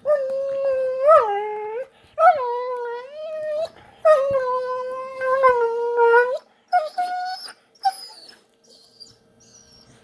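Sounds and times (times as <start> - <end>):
dog whining: 0.0 - 10.0.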